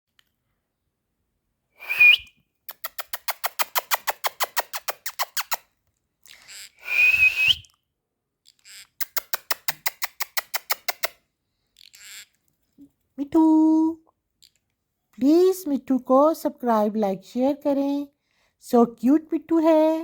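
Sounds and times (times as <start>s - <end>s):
parrot whistling calls: 1.8s - 2.3s, 6.8s - 7.7s.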